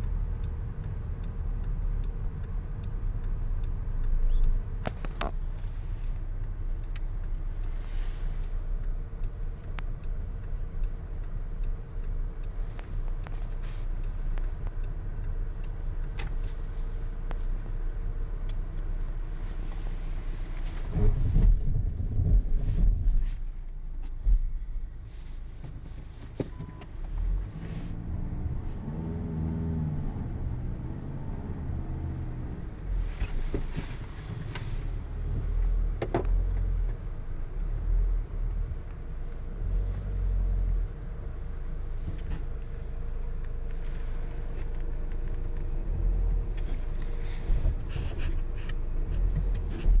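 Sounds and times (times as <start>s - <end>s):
car engine and road rumble: 0.0s - 50.0s
rustling: 32.9s - 35.6s.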